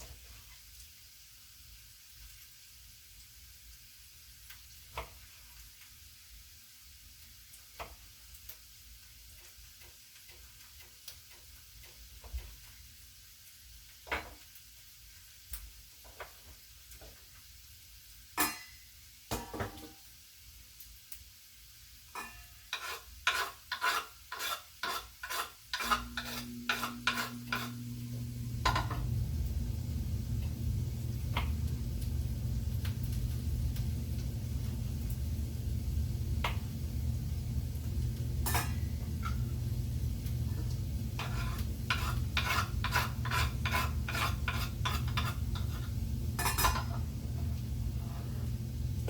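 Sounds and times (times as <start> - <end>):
low steady hum: 25.8 - 49.0.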